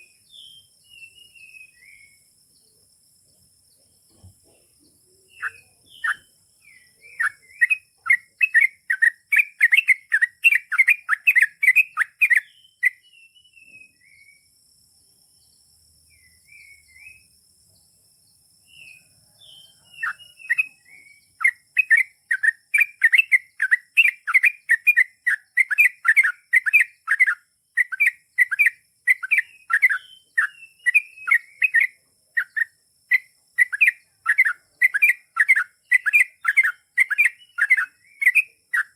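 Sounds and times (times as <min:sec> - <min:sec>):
bird singing chirping notes: 0:00.0 - 0:14.6, 0:18.6 - 0:38.9.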